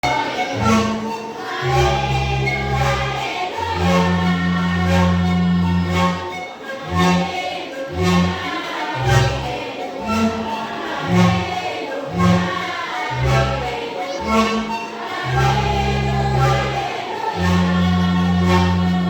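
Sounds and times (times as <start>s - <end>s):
voices singing together: 0.0s - 19.0s
bass notes: 1.7s - 6.2s, 12.1s - 12.6s, 13.2s - 19.0s.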